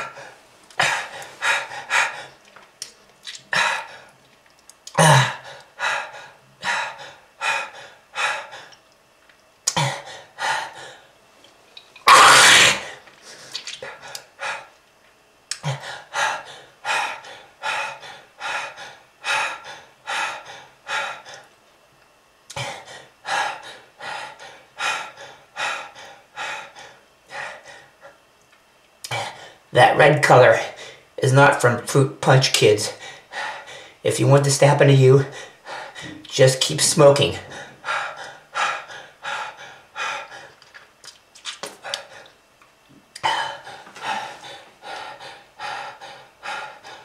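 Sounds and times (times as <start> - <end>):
person coughing hard: 5.0 - 5.4, 12.1 - 13.0.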